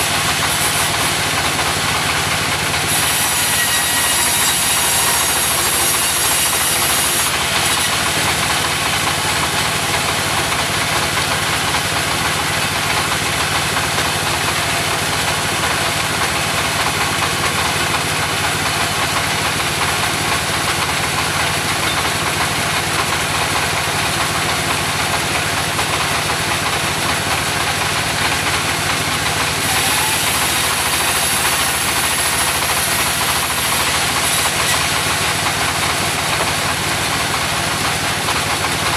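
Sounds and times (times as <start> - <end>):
sawmill engine drone: 0.0 - 38.9
high hiss of sawing: 29.6 - 35.0.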